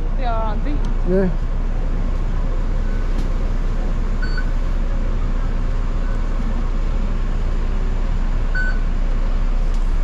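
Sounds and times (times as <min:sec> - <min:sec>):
bus engine and air conditioning drone: 0:00.0 - 0:10.0
short electronic beeps: 0:04.2 - 0:04.5, 0:08.6 - 0:08.8.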